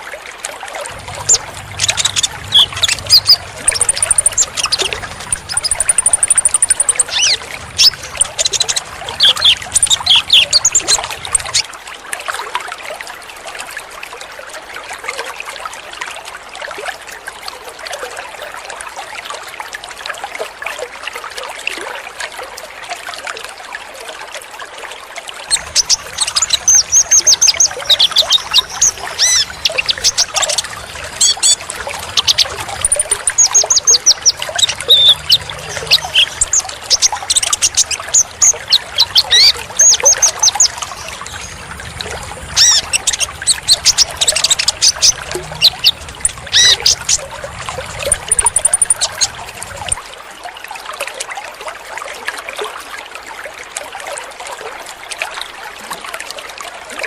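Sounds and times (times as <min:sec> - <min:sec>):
trickle of running water: 0:00.0 - 0:57.0
bird twittering chirps and trills: 0:00.9 - 0:11.6, 0:25.5 - 0:50.0.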